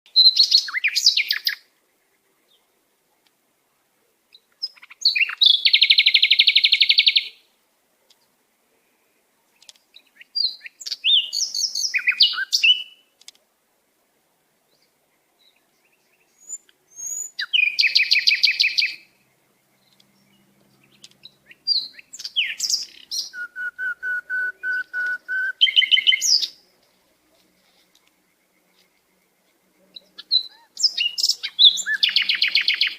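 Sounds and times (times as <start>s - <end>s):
songbird trilling and chirping: 0.1s - 1.6s, 4.3s - 7.4s, 9.6s - 13.0s, 14.7s - 26.7s, 27.9s - 32.9s.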